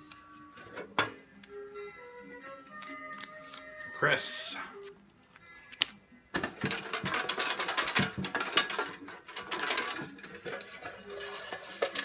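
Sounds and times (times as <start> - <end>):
paper slips rattling in container: 6.4 - 12.0.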